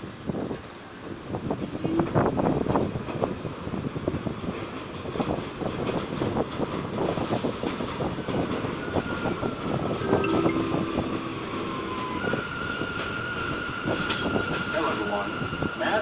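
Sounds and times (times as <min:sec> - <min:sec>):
train rumble: 0:00.0 - 0:16.0
train wheels clattering on rails: 0:01.8 - 0:10.0, 0:10.9 - 0:16.0
faint high tone: 0:10.0 - 0:12.6.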